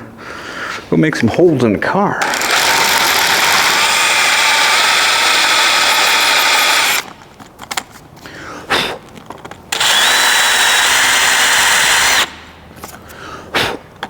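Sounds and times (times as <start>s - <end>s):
power drill boring: 2.2s - 7.1s, 9.7s - 12.4s
handling sounds: 7.0s - 8.4s.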